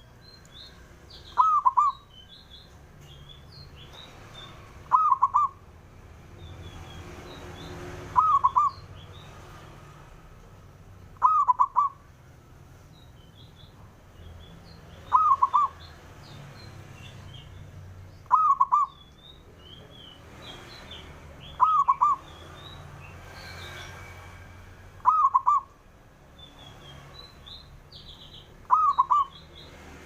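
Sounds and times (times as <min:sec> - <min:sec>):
faint high bird chirps: 0:00.0 - 0:05.6, 0:06.4 - 0:09.4, 0:11.2 - 0:12.1, 0:12.9 - 0:24.1, 0:25.0 - 0:30.0
dove cooing: 0:01.4 - 0:02.0, 0:04.9 - 0:05.6, 0:08.1 - 0:08.8, 0:11.2 - 0:12.0, 0:15.1 - 0:15.8, 0:18.3 - 0:18.9, 0:21.6 - 0:22.2, 0:25.0 - 0:25.7, 0:28.7 - 0:29.3.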